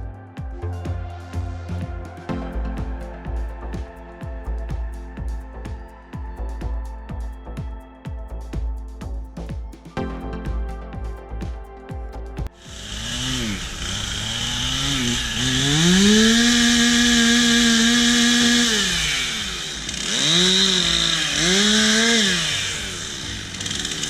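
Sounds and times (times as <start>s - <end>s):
chainsaw engine revving: 12.6s - 24.0s.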